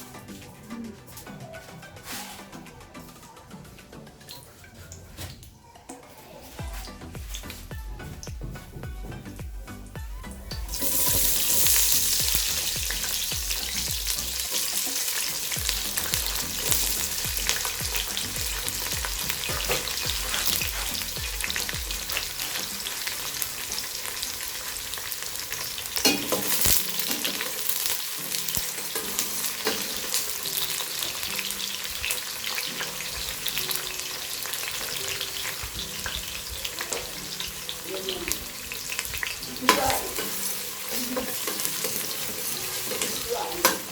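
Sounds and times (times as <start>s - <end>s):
food sizzling in hot oil: 10.6s - 43.9s.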